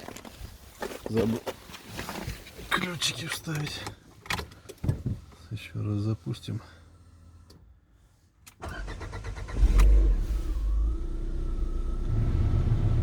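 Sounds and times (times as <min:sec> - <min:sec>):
car engine starting and idling: 0:03.4 - 0:13.0.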